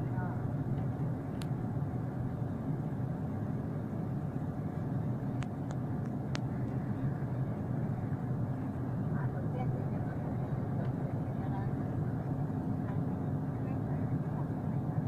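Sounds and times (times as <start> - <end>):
steady jet engine noise: 0.0 - 15.0.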